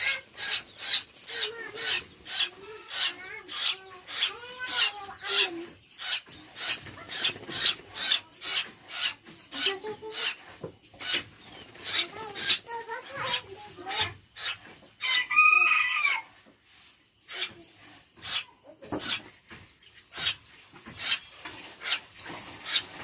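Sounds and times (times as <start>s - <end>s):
rooster clucking: 0.0s - 16.3s
rooster crowing loudly: 15.1s - 16.3s.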